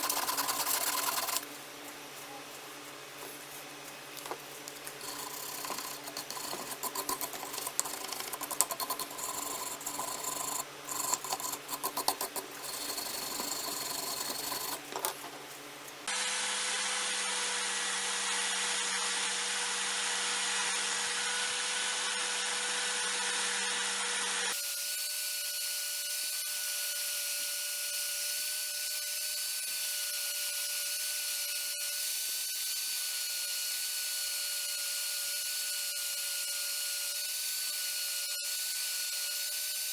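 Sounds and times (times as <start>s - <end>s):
scraping and clicking: 0.0s - 1.5s, 3.2s - 15.6s
small power tool humming: 0.0s - 1.5s, 4.8s - 15.3s, 16.1s - 39.9s.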